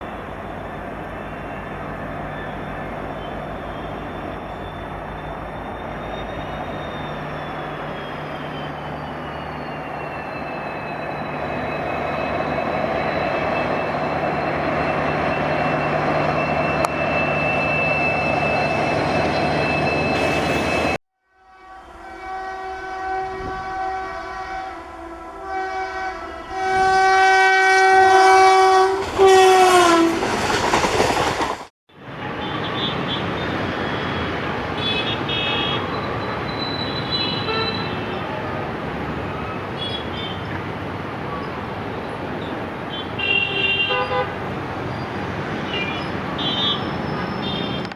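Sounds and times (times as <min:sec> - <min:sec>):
locomotive rumbling past: 0:00.0 - 0:47.9
locomotive horn blasts: 0:21.3 - 0:30.2, 0:34.8 - 0:36.0, 0:37.0 - 0:38.4, 0:42.8 - 0:44.6.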